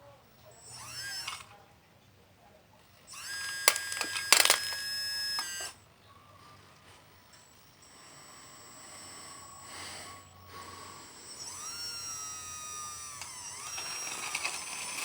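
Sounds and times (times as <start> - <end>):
electric motor whining: 0.5 - 1.6, 3.1 - 5.8, 6.4 - 15.0
sharp clicks: 3.5 - 5.7.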